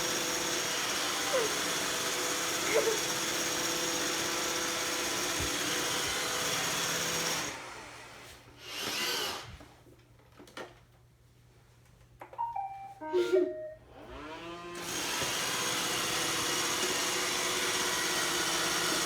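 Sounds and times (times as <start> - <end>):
robot vacuum motor whine: 14.2 - 19.0.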